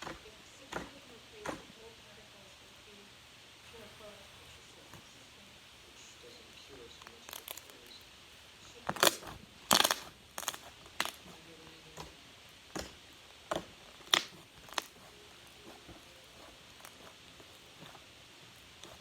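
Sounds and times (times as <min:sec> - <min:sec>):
sharp clicks and pops: 0:08.9 - 0:11.2, 0:12.7 - 0:15.0.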